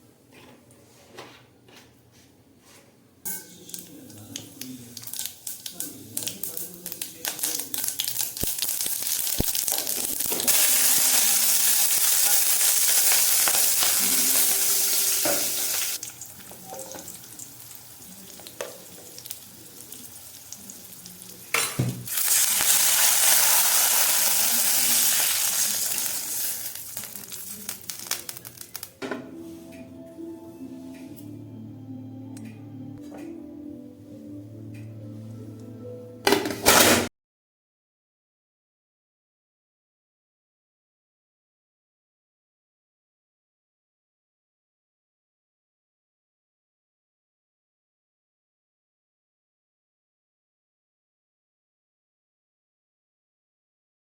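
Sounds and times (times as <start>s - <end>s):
oil sizzling in a pan: 3.3s - 28.9s
crackling pops: 5.0s - 10.6s, 26.6s - 29.0s.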